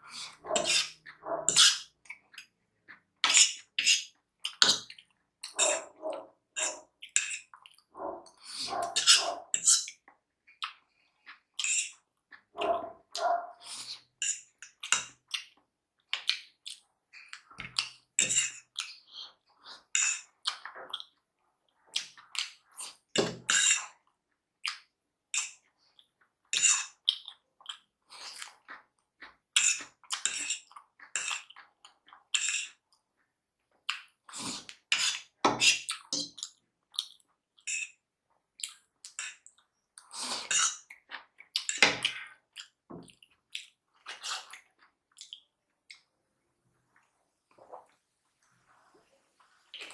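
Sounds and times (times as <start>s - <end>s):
chewing and slurping noodles: 16.2s - 33.0s, 33.8s - 38.0s, 38.6s - 46.1s, 46.9s - 49.9s.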